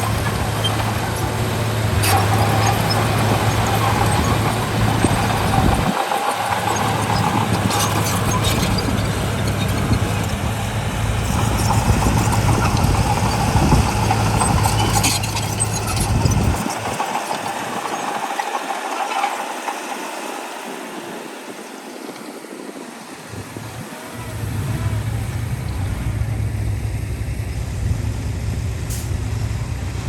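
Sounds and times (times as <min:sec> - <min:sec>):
diesel machinery engine drone: 0:00.0 - 0:30.0.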